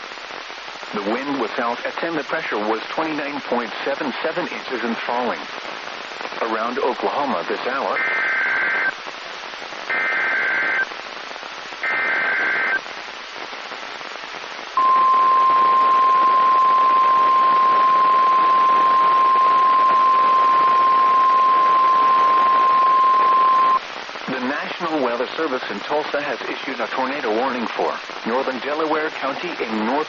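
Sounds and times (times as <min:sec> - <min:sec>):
radio static hiss: 0:00.0 - 0:30.0
harsh digital data bursts: 0:09.9 - 0:10.9
loud steady warning alarm tone: 0:14.8 - 0:23.8.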